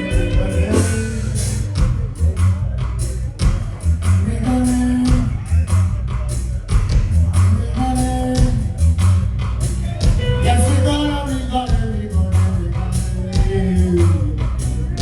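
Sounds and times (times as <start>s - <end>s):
person singing lead vocal: 0.0s - 1.8s, 4.0s - 6.2s, 7.2s - 9.0s, 10.0s - 15.0s
heavy bass line: 0.0s - 15.0s
reggae band playing: 0.0s - 15.0s
steady drum beat: 0.0s - 15.0s.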